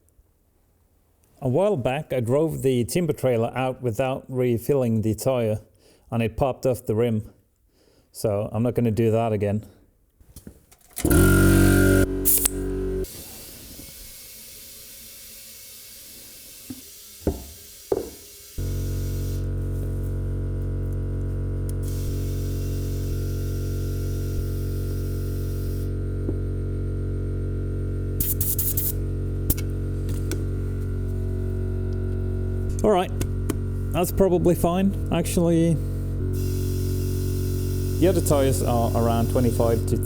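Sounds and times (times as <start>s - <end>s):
air compressor humming: 10.9s - 40.0s
air hissing: 11.0s - 20.2s, 21.7s - 26.5s, 28.2s - 31.5s, 32.6s - 40.0s.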